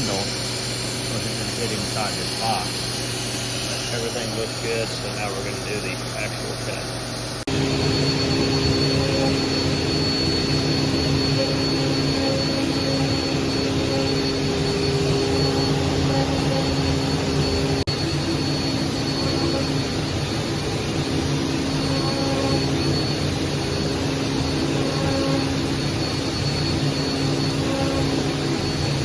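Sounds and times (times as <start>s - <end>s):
router spindle whining: 0.0s - 29.0s.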